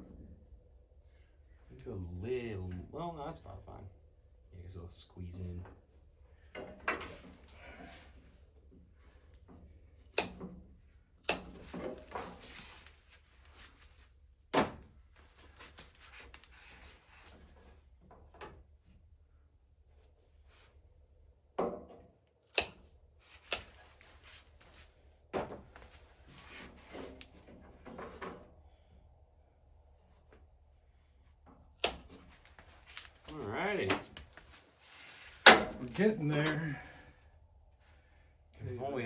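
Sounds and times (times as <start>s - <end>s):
tools knocking and clunking: 35.4s - 35.8s.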